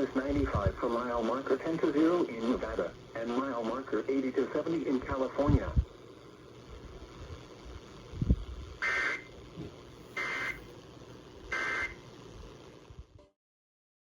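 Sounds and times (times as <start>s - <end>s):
warbling two-tone data bursts: 8.8s - 9.3s, 10.2s - 10.6s, 11.5s - 12.0s.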